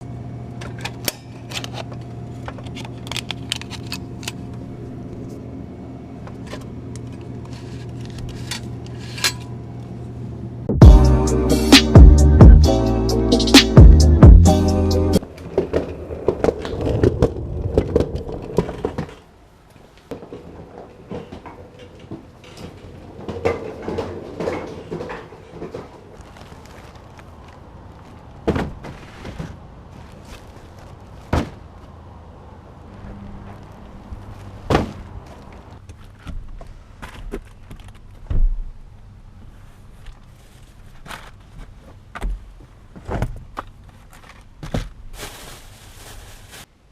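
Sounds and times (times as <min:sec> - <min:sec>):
knocks and thuds: 0:31.3 - 0:31.6.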